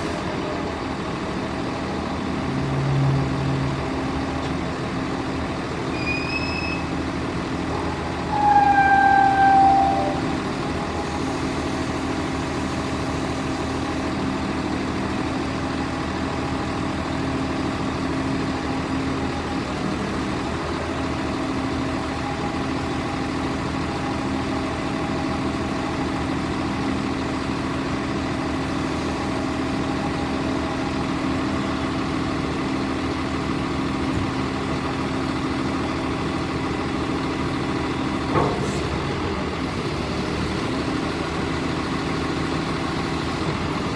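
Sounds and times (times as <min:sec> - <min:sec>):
diesel engine running: 0:00.0 - 0:43.9
loud horn blast: 0:07.8 - 0:10.9.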